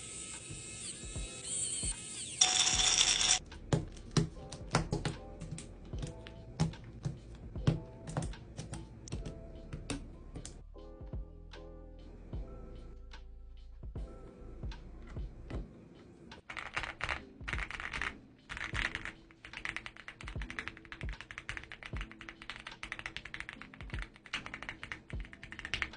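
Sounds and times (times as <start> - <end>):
typing on mechanical keyboard: 16.4 - 25.9.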